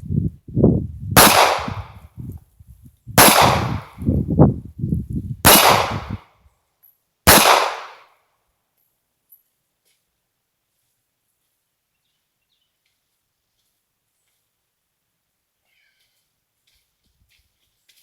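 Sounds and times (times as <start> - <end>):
pistol shots with echo: 1.2 - 2.0, 3.2 - 3.9, 5.4 - 6.2, 7.3 - 8.1.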